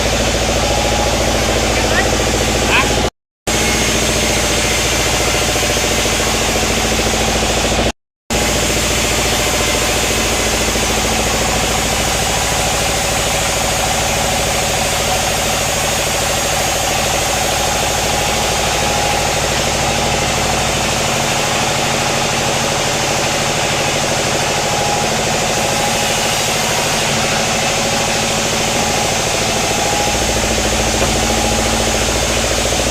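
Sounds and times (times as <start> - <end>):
sawmill engine drone: 0.0 - 32.9
machinery whirring: 23.6 - 32.9.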